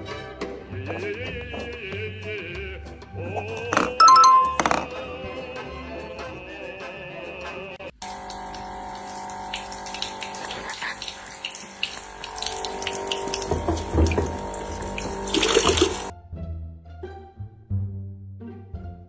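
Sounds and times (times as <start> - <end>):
tap water running: 8.0 - 16.1.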